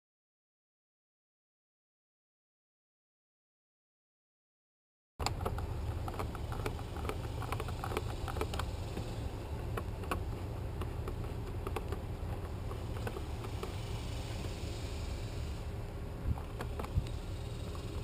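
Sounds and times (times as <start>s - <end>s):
low hum: 5.2s - 18.0s
small clicks and taps: 9.7s - 13.8s.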